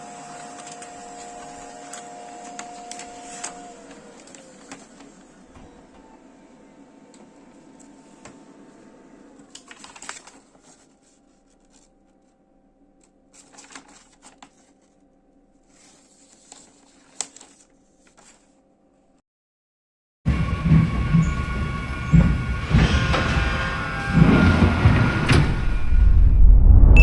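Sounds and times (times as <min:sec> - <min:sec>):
printer clicks and rattles: 0:00.0 - 0:05.3
printer motor whine: 0:00.0 - 0:09.6.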